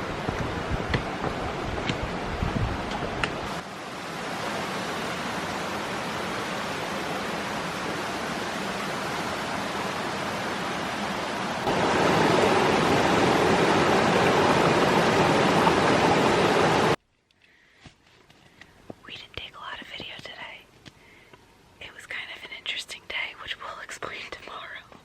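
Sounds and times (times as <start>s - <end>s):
waterfall rushing water: 0.0s - 17.0s.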